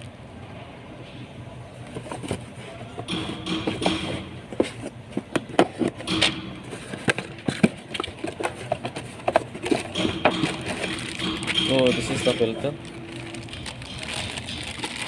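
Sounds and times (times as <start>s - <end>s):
fuel filter parts clicking: 3.0s - 15.0s.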